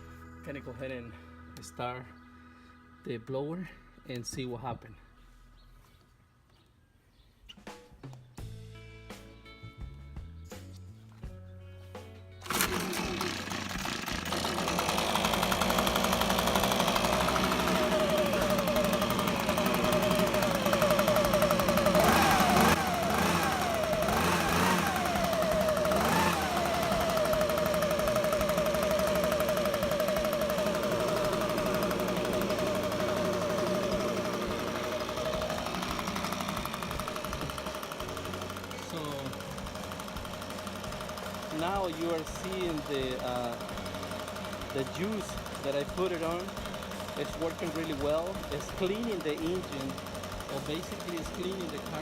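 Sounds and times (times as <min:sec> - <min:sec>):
leaf blower engine running: 0:12.4 - 0:52.0
throttle revs: 0:12.4 - 0:52.0.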